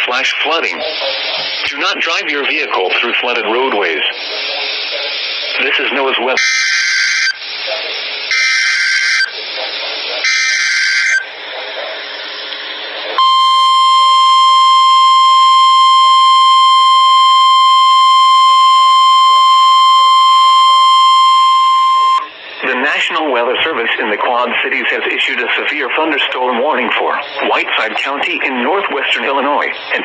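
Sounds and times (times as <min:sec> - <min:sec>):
radio hiss: 0:00.0 - 0:30.0
steady warning alert tone: 0:13.2 - 0:22.3.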